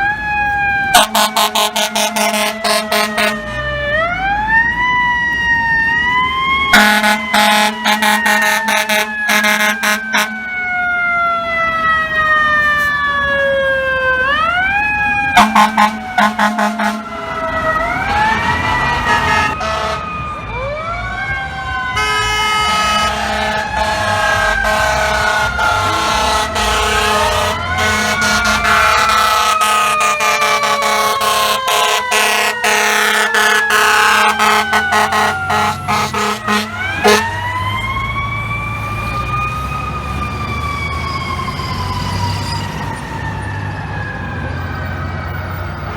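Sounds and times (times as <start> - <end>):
air horn blasts: 0.9 - 3.5, 6.7 - 10.4, 15.4 - 17.3, 18.5 - 20.1, 21.9 - 37.5.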